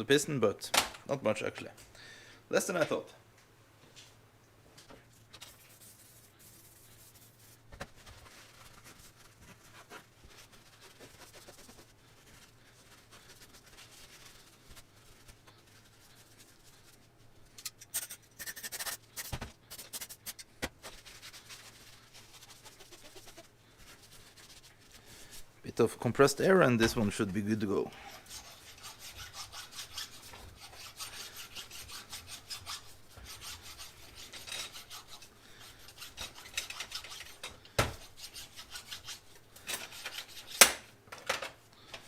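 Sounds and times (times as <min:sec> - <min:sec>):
metal parts scraping: 0:39.6 - 0:40.6.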